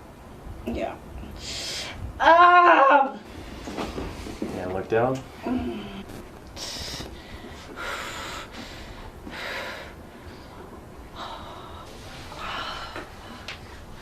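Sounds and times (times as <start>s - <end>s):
person breathing noisily: 6.6s - 14.0s.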